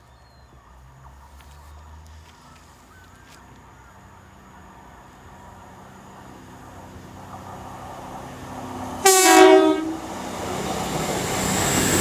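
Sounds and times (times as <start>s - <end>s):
diesel train engine drone: 2.9s - 12.0s.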